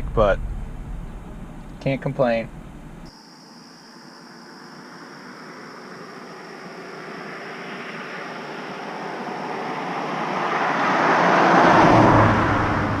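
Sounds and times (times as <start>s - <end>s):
vehicle passing by: 6.2s - 13.0s.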